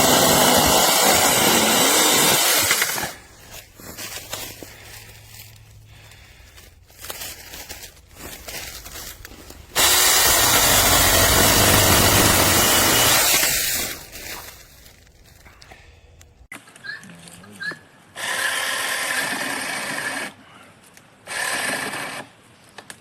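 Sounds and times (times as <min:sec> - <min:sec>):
mini chainsaw running: 0:00.0 - 0:03.2, 0:09.7 - 0:14.1.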